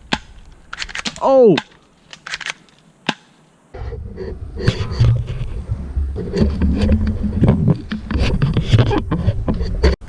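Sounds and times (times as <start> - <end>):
low rumbling with crackles: 3.7 - 10.0.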